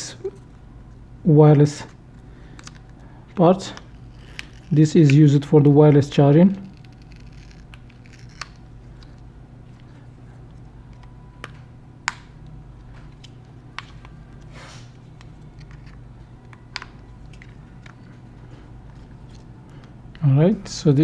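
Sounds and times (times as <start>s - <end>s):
soft scrape: 14.5s - 14.9s.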